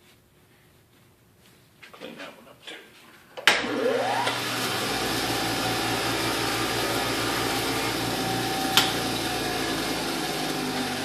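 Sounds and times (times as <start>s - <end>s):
small electric tool running: 3.6s - 11.0s.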